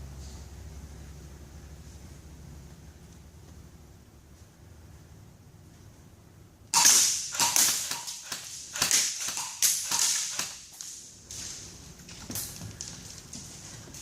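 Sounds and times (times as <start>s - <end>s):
airsoft gun shots: 6.8s - 10.9s.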